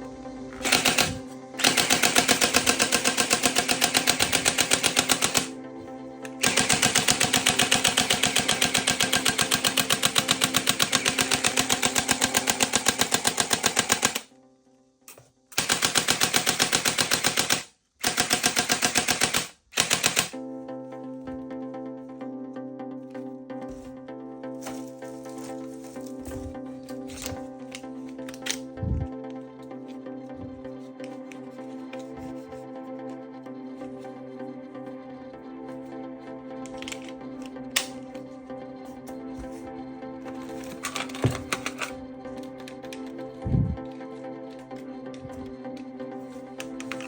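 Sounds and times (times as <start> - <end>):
toy gun firing automatic bursts: 0.6 - 5.6, 6.4 - 14.3, 15.5 - 20.4, 40.6 - 41.9.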